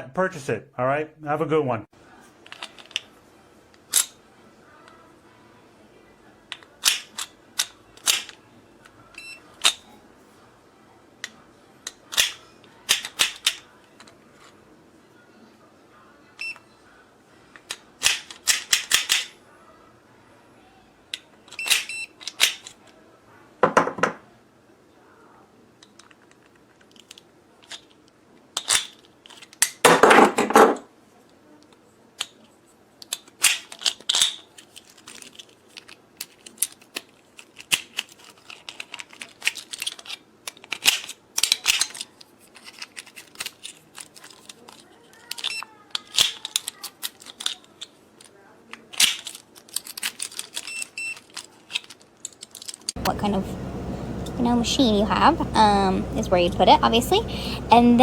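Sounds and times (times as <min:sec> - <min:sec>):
small hard objects clicking: 0:33.0 - 0:53.0
objects clattering: 0:48.9 - 0:54.4.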